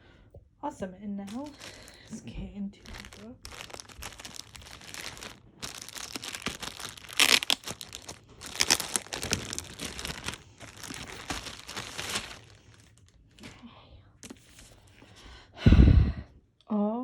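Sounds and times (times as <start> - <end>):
wrapping crinkling and tearing: 1.3 - 2.2, 2.8 - 13.6.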